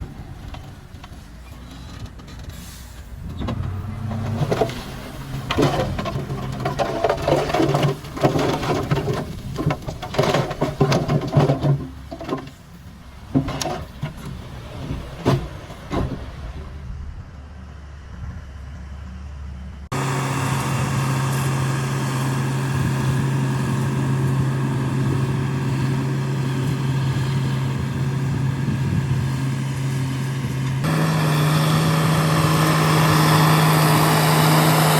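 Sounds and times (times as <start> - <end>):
bulldozer diesel engine: 0.0 - 34.9
metal clanks and knocks: 3.3 - 16.5.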